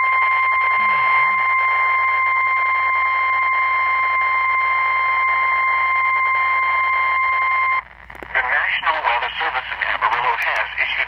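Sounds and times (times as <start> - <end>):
steady high alarm tone: 0.0 - 7.8
radio hiss: 0.6 - 2.1, 8.0 - 11.0.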